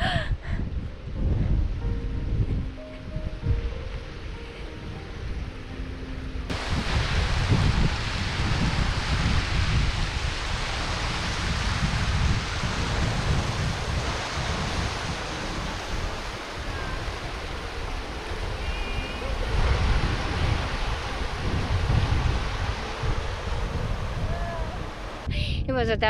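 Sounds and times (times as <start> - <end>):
wind buffeting microphone: 0.0 - 26.0
waterfall rushing: 6.5 - 25.3.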